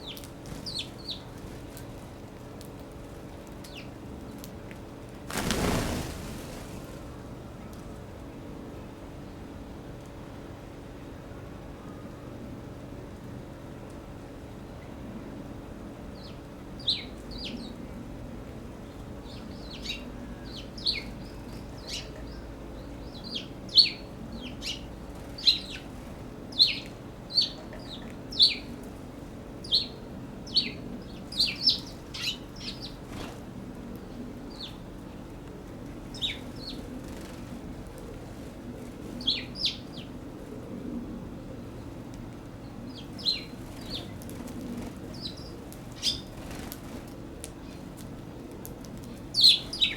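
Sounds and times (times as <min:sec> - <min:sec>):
sparrows chirping: 0:00.0 - 0:01.6, 0:16.2 - 0:17.8, 0:18.8 - 0:28.8, 0:29.6 - 0:33.3, 0:34.0 - 0:35.3, 0:36.1 - 0:37.2, 0:39.2 - 0:40.2, 0:42.6 - 0:46.7, 0:49.1 - 0:49.9
steady low hum: 0:00.0 - 0:49.9.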